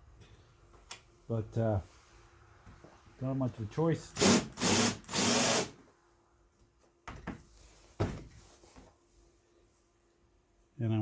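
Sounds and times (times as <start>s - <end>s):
power drill cutting a hole: 4.2s - 5.8s.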